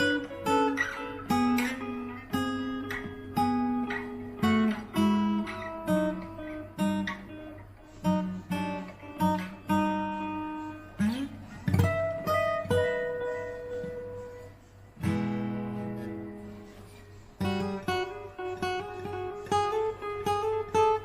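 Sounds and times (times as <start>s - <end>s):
acoustic guitar picking and chords: 0.0s - 21.0s.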